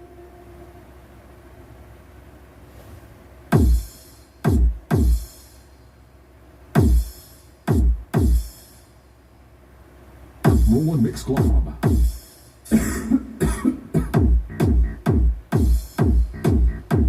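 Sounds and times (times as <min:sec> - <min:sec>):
electronic dance music: 0:03.5 - 0:05.6, 0:06.8 - 0:08.8, 0:10.4 - 0:12.4, 0:13.9 - 0:17.0
deep kick drum hits: 0:03.6 - 0:03.9, 0:04.5 - 0:05.2, 0:06.8 - 0:07.1, 0:07.7 - 0:08.4, 0:10.5 - 0:10.8, 0:11.4 - 0:12.2, 0:13.4 - 0:17.0.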